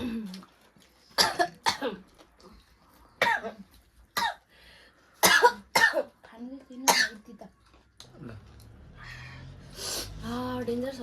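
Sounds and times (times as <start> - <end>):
person coughing: 5.2 - 6.1.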